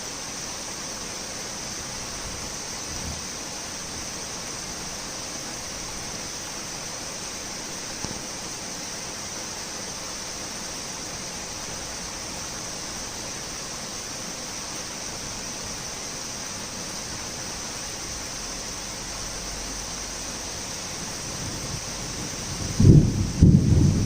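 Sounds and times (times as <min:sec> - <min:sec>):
torrential rain: 0:00.0 - 0:24.0
faint low thunder rumble: 0:21.0 - 0:24.0.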